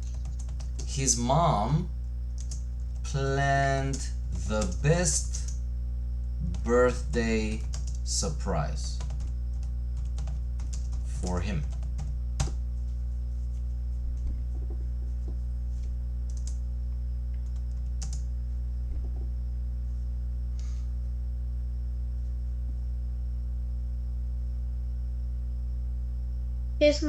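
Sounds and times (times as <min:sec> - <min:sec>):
keyboard keys clicking: 0:00.0 - 0:00.9, 0:02.4 - 0:03.0, 0:06.5 - 0:08.0, 0:16.3 - 0:16.6, 0:17.4 - 0:18.2
electrical mains hum: 0:00.0 - 0:27.0.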